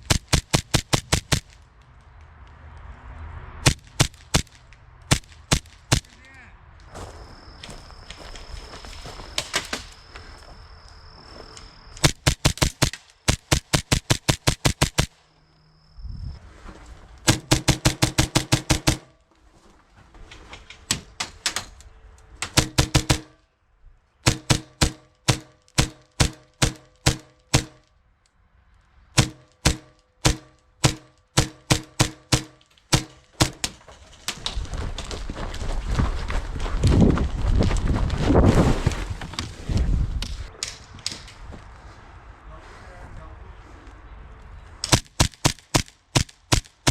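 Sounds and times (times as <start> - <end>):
airsoft pistols firing: 0.0 - 1.6, 3.6 - 6.2, 12.0 - 15.2, 17.3 - 19.2, 22.4 - 23.4, 24.2 - 27.9, 29.2 - 33.8, 44.9 - 46.9.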